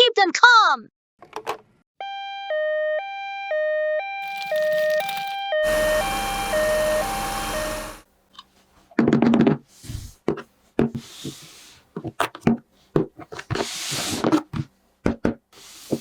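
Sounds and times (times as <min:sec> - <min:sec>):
toy ambulance siren: 0:02.0 - 0:08.0.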